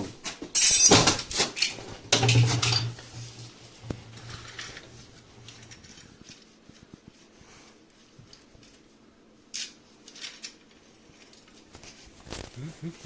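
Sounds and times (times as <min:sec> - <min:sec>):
metal clanking and clattering: 0:00.5 - 0:03.1.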